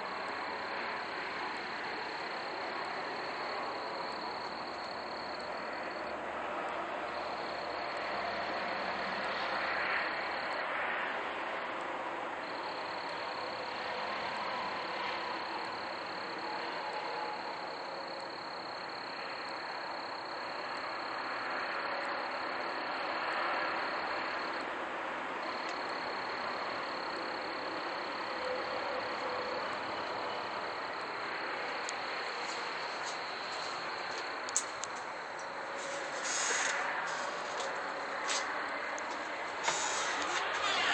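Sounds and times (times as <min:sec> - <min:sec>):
dense outdoor din: 0:26.8 - 0:40.9
thin high whine: 0:31.1 - 0:40.9.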